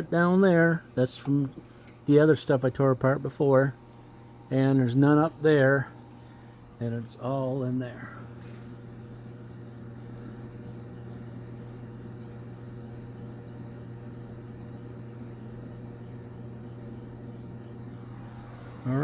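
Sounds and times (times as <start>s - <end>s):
low hum: 3.0s - 19.0s.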